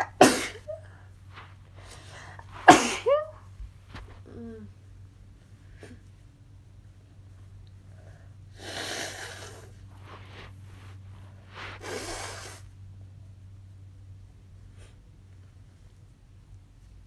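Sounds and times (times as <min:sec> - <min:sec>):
person sneezing: 0:00.0 - 0:00.9, 0:02.2 - 0:03.4.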